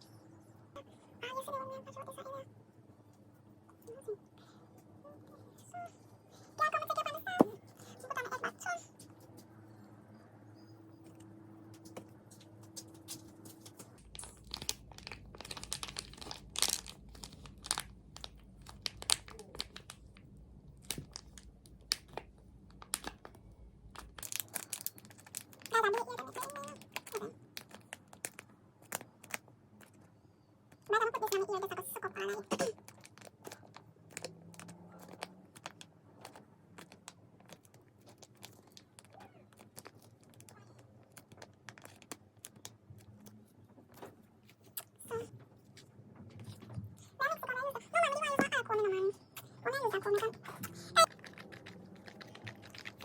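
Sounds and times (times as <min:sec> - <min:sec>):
faint steady hum: 0:00.0 - 0:34.4
crinkling handling noises: 0:11.0 - 0:48.6, 0:49.3 - 0:53.0
small objects clicking and tapping: 0:11.1 - 0:30.1, 0:32.5 - 0:44.1.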